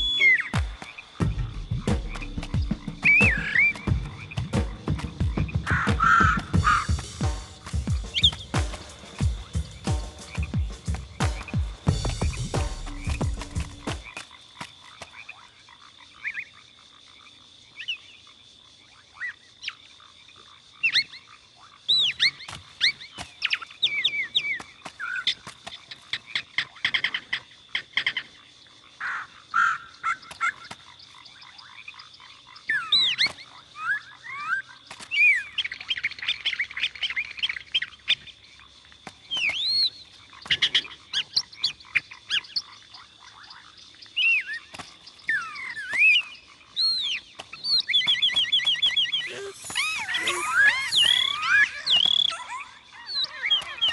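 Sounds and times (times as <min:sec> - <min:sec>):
birds chirping: 0:00.0 - 0:14.2, 0:29.0 - 0:53.9.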